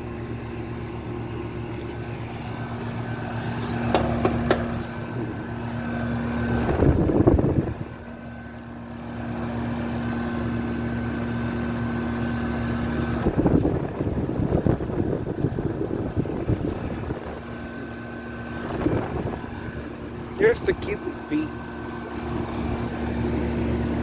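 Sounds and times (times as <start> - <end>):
air conditioner humming: 0.0 - 24.0
rough rumble on microphone: 13.0 - 20.1.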